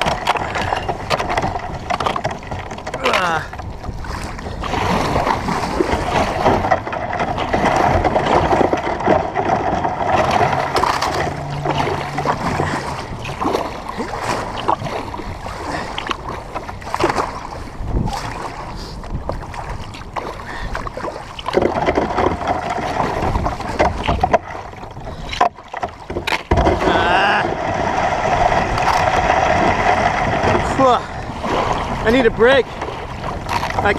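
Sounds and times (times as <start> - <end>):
ice knocking on hull: 0.0 - 3.5, 4.8 - 12.8, 21.5 - 24.5, 25.4 - 31.0
water rushing along kayak hull: 0.0 - 33.9.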